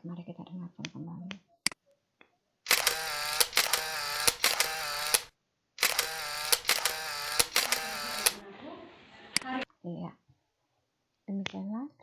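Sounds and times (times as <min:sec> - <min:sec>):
camera shutter clicks: 0:02.7 - 0:08.4.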